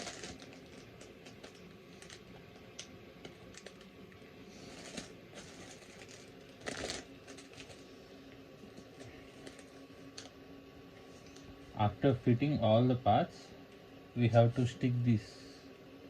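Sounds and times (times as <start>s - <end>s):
packaging rustling: 0.0s - 3.9s, 4.5s - 7.9s, 8.7s - 10.3s.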